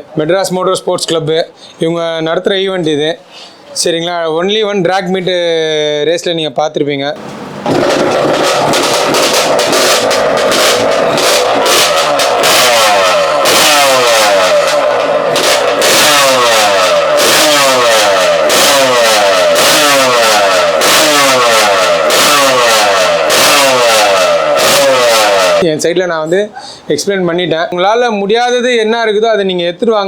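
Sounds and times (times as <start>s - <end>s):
two-stroke motorcycle engine revving: 7.2s - 25.6s.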